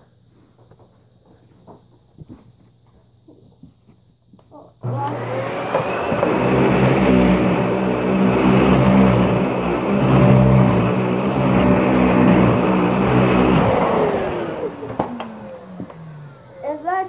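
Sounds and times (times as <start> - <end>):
vacuum cleaner running: 4.8 - 17.0.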